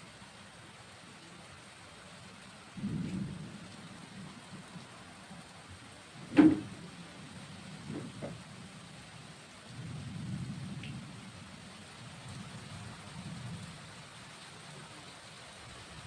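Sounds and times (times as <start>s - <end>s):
rain falling: 0.0s - 16.0s
low thumps: 6.2s - 6.9s
faint knocks: 6.3s - 6.8s, 7.9s - 8.4s.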